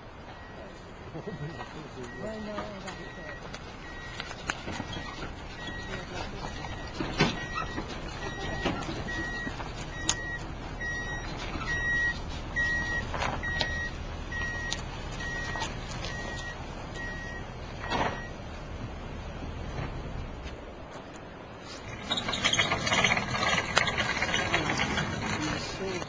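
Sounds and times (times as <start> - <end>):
low engine rumble: 0.0 - 26.0
reversing alarm beeping: 0.3 - 18.4.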